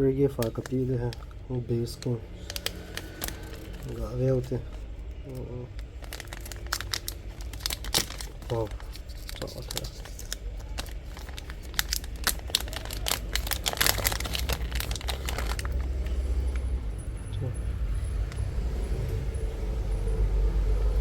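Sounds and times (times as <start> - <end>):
steady low rumble: 0.0 - 21.0
small objects clicking and crinkling: 2.0 - 16.8.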